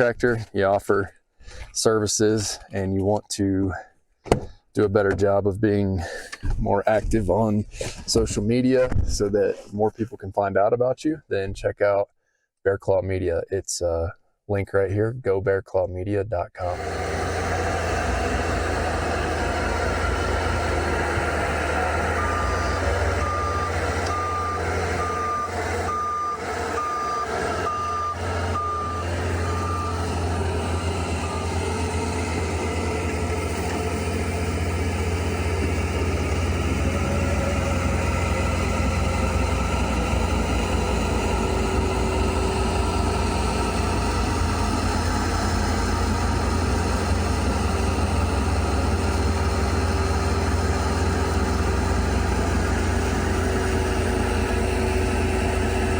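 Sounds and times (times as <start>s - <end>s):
diesel engine running: 16.6s - 55.9s
reversing alarm beeping: 18.4s - 37.6s.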